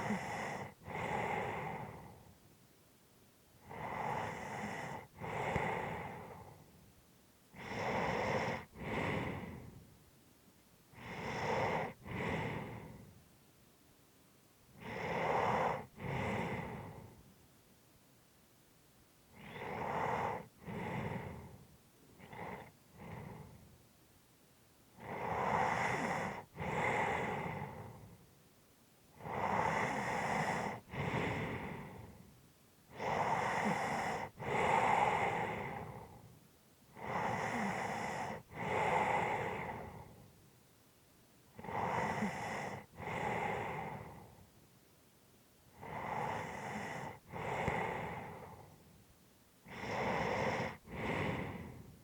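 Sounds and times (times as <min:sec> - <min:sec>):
person breathing heavily in sleep: 0:00.0 - 0:02.4, 0:03.6 - 0:06.9, 0:07.5 - 0:10.0, 0:10.9 - 0:13.3, 0:14.7 - 0:17.3, 0:19.3 - 0:23.8, 0:25.0 - 0:28.3, 0:29.1 - 0:40.4, 0:41.5 - 0:44.6, 0:45.7 - 0:48.9, 0:49.6 - 0:52.0.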